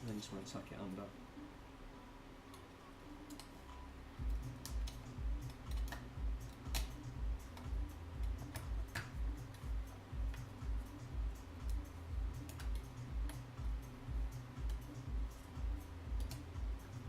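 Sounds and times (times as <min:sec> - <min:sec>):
small tool clicks and ticks: 0:04.3 - 0:09.6, 0:12.4 - 0:13.4, 0:16.2 - 0:16.5
regular low thumping: 0:06.1 - 0:17.0.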